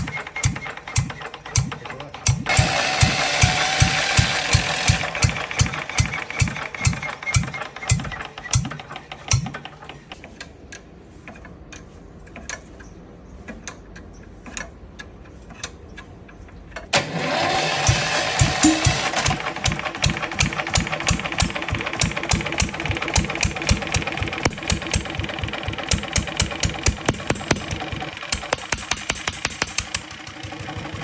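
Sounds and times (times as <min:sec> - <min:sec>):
diesel engine thumping: 0:00.0 - 0:10.2, 0:17.3 - 0:31.0.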